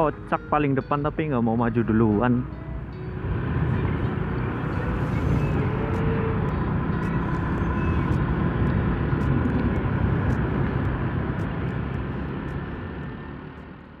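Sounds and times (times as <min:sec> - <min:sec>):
road noise: 0:00.0 - 0:14.0
motorcycle engine: 0:02.5 - 0:14.0
wind rushing over microphone: 0:03.1 - 0:13.6.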